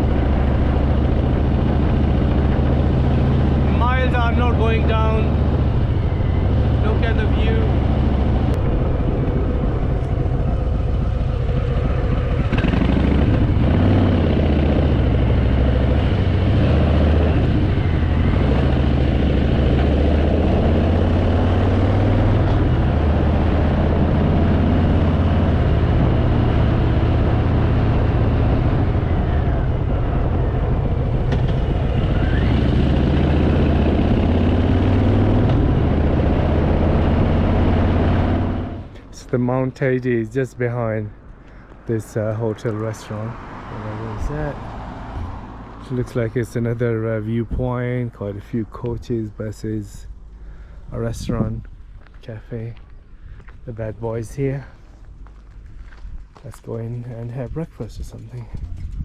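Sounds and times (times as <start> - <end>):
motorcycle engine running: 0.0 - 39.0
wind rushing over microphone: 0.0 - 40.3, 41.0 - 54.9, 55.6 - 59.0.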